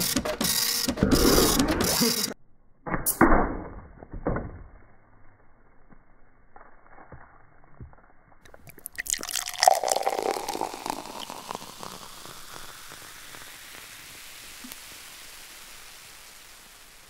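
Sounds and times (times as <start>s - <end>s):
sharp crackles and clicks: 1.0s - 17.0s
steady hiss: 9.2s - 17.0s.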